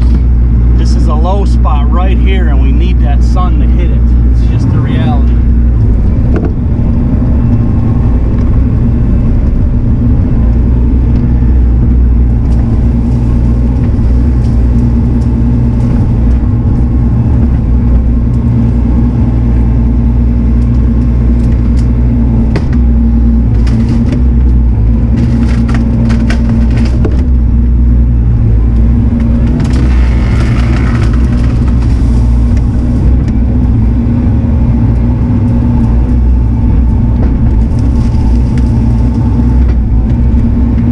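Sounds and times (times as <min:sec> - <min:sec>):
diesel engine running under load: 0:00.0 - 0:40.9
dirt cracking and crunching: 0:00.0 - 0:40.9.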